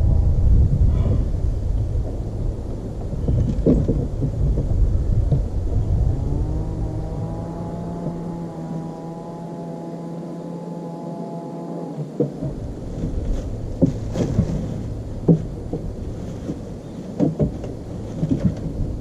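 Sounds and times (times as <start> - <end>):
boat motor hum: 0.0 - 19.0
wind buffeting microphone: 0.0 - 19.0.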